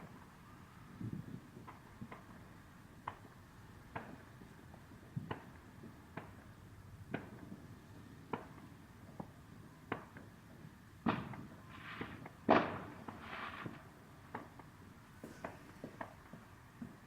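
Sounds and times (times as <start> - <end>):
distant fireworks popping: 0.0 - 17.0
fireworks hissing crackle: 0.0 - 17.0.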